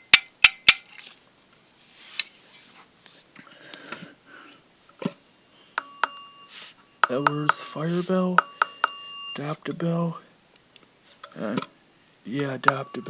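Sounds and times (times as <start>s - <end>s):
faint steady tone: 1.5s - 13.0s
person sniffing: 6.5s - 6.8s.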